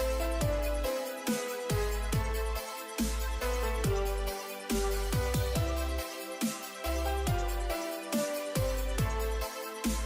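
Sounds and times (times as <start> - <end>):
electronic music with sub-bass: 0.0 - 10.0.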